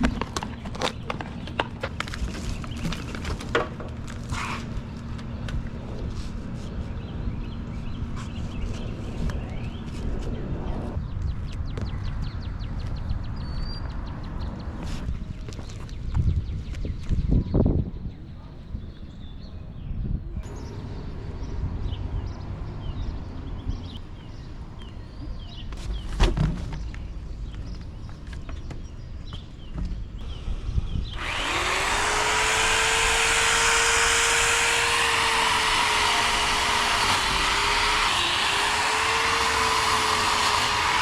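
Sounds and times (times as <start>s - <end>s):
chainsaw running: 31.2s - 41.0s.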